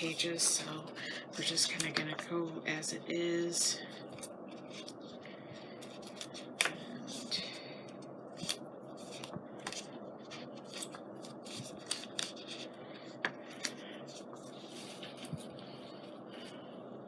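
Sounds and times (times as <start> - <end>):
paper rustling: 8.4 - 12.7, 13.5 - 16.6.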